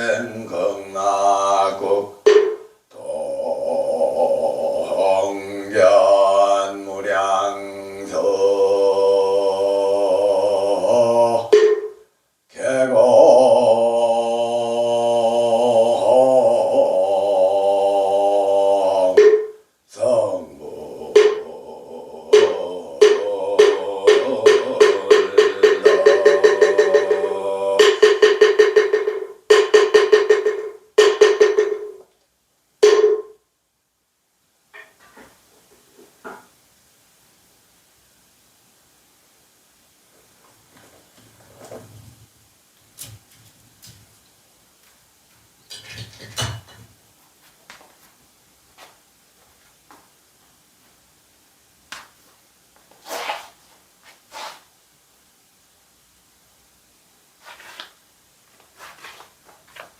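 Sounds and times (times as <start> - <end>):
rustling scrapes: 52.9 - 54.7, 57.4 - 58.0, 58.6 - 59.9.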